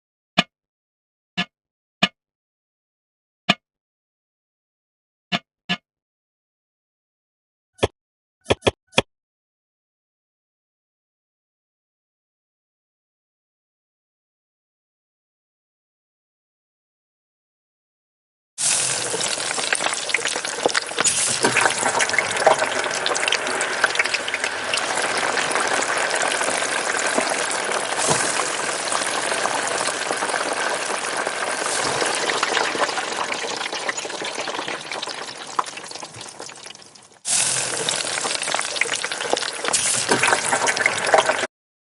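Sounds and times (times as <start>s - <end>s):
food deep-frying in hot oil: 18.6s - 41.5s.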